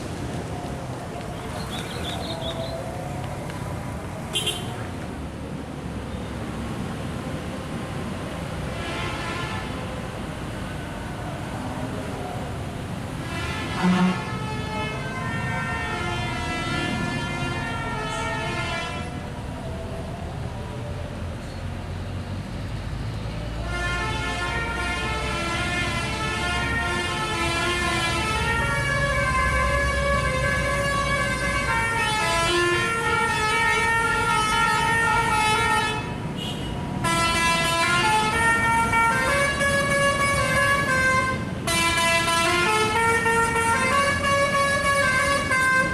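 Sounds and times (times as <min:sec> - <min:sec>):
bus engine running: 0:00.0 - 0:09.4
road traffic rumble: 0:00.0 - 0:45.9
bus musical air horn: 0:04.3 - 0:04.9, 0:08.7 - 0:09.9, 0:13.2 - 0:19.4, 0:23.6 - 0:45.9.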